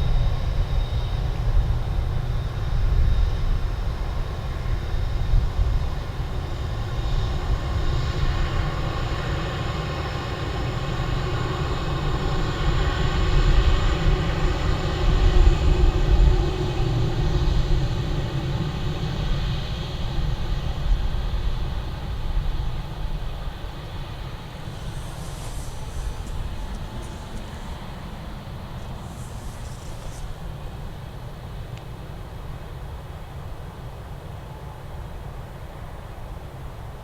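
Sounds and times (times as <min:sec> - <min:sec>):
jet engines rumbling and whining: 0:00.0 - 0:37.0.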